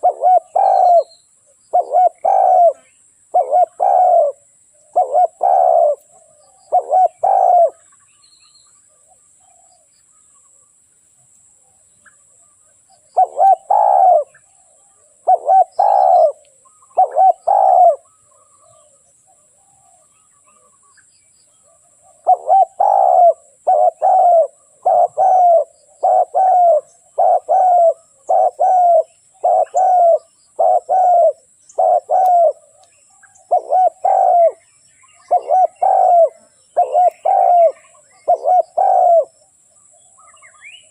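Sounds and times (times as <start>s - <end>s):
dove cooing: 0.0s - 8.0s, 12.9s - 20.7s, 21.6s - 32.8s, 33.4s - 40.9s.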